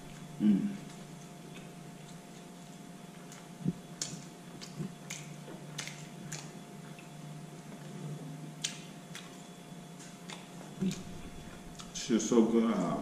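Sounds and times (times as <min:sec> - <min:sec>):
person chewing food: 0:00.0 - 0:12.0
wet mouth clicks and smacks: 0:03.3 - 0:07.1, 0:08.6 - 0:09.4, 0:10.0 - 0:11.1.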